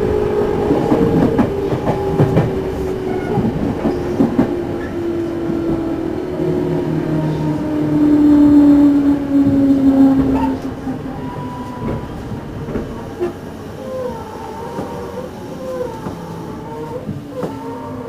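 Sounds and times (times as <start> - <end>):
rail joint clicks: 0.0 - 18.0
train motor low drone: 0.0 - 18.0.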